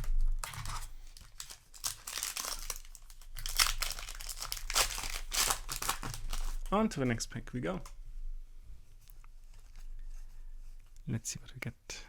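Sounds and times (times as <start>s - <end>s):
foil wrapper crinkling: 0.0s - 6.8s.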